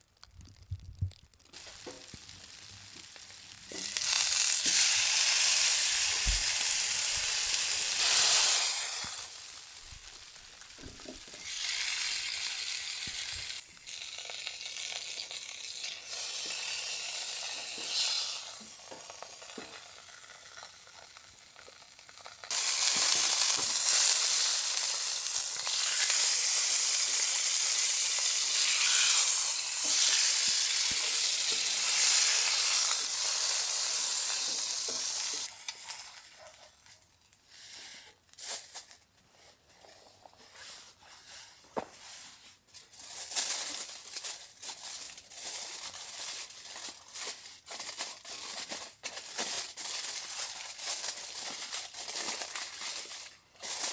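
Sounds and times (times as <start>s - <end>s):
steak sizzling: 0.0s - 37.3s.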